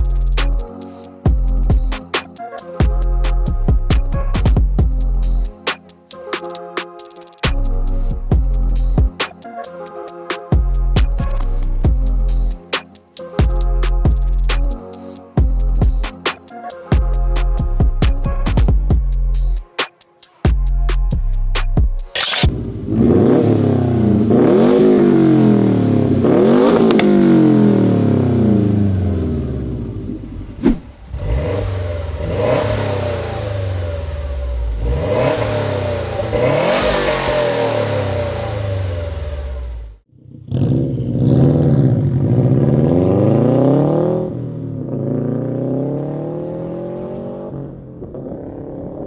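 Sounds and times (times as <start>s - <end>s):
car engine accelerating: 22.5s - 49.0s.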